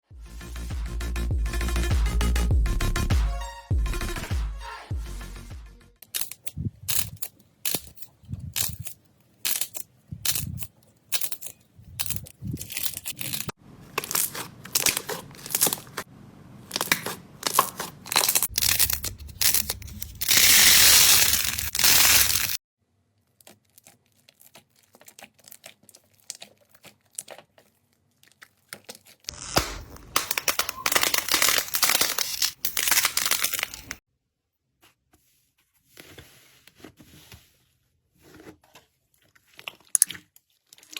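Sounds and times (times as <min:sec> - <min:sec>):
slime squishing: 0:13.9 - 0:16.0, 0:16.6 - 0:20.6, 0:23.2 - 0:31.9, 0:38.2 - 0:40.9.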